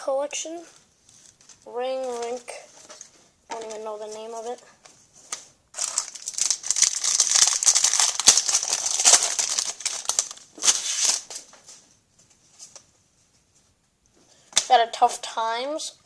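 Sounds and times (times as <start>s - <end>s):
wrapper crinkling and tearing: 1.1s - 3.9s, 5.3s - 11.4s.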